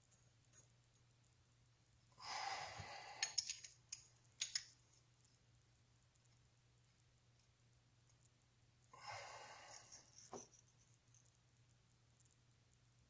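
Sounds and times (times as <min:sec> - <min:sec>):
small metal parts clinking: 0:03.2 - 0:04.8.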